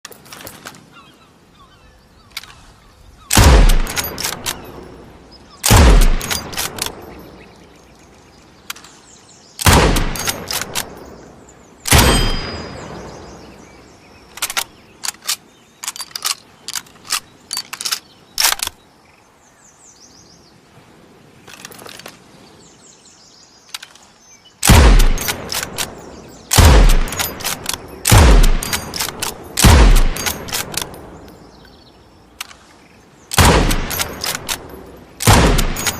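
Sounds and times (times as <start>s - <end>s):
rifle shots echoing: 3.3s - 4.6s, 5.6s - 7.0s, 9.6s - 11.1s, 11.9s - 13.4s, 24.6s - 31.1s, 33.3s - 35.9s
rifle bolt clicks and knocks: 3.4s - 4.7s, 5.7s - 7.0s, 9.9s - 11.1s, 14.3s - 18.8s, 25.0s - 26.0s, 26.8s - 31.4s, 32.4s - 32.6s, 33.4s - 35.9s.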